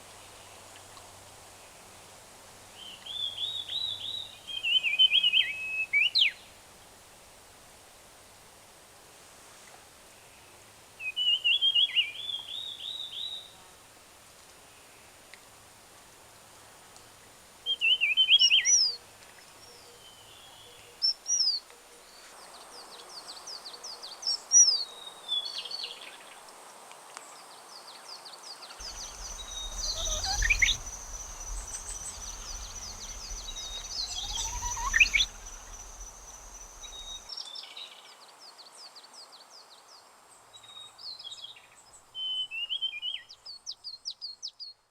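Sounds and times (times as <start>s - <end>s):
bird whistles falling in pitch: 28.8s - 37.2s
birds chirping and trilling: 28.8s - 37.2s
low rumble: 28.8s - 37.2s.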